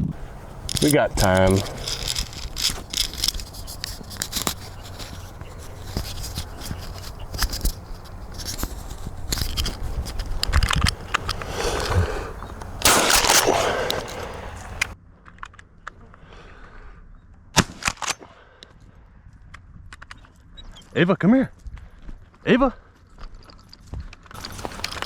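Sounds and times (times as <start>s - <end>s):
rustling on microphone: 0.0s - 15.0s, 24.4s - 25.0s
wind noise: 0.0s - 15.0s, 24.4s - 25.0s
shotgun shots: 12.8s - 14.9s.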